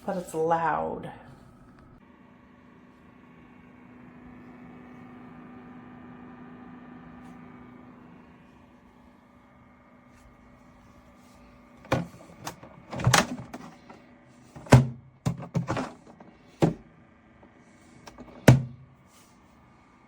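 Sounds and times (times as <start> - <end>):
cooling fan humming: 0.0 - 20.0
knocks and thuds of plastic fridge: 11.9 - 16.9, 18.1 - 18.8.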